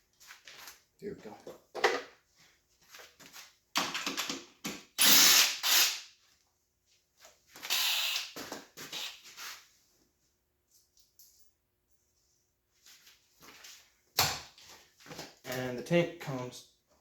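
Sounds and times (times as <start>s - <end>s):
power tool bursts: 5.0s - 6.0s, 7.7s - 8.4s.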